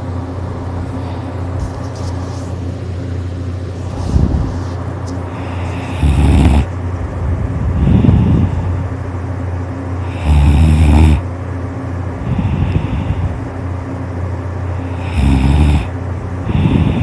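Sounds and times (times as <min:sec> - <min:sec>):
soft breaths: 0:00.8 - 0:02.8, 0:03.6 - 0:06.8, 0:07.7 - 0:09.0, 0:12.2 - 0:13.7, 0:14.7 - 0:17.0
loud snores: 0:05.3 - 0:06.7, 0:10.0 - 0:11.3, 0:14.8 - 0:17.0.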